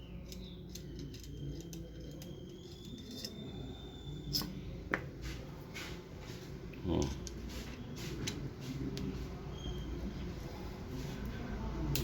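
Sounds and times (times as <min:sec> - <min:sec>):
screwdriver clicking and scraping: 0:00.0 - 0:03.6.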